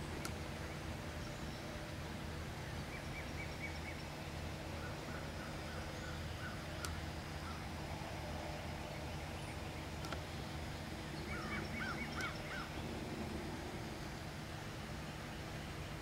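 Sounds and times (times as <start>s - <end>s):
steady low hum: 0.0s - 16.0s
faint wild turkey calls: 4.7s - 7.8s, 11.2s - 12.8s.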